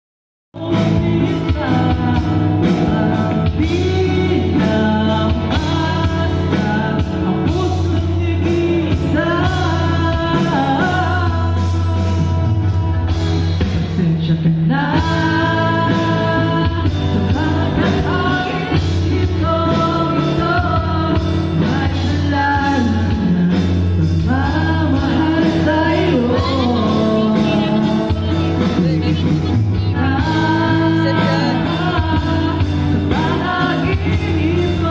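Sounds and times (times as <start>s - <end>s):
bass line: 0.6s - 34.9s
voices holding notes: 24.9s - 34.9s.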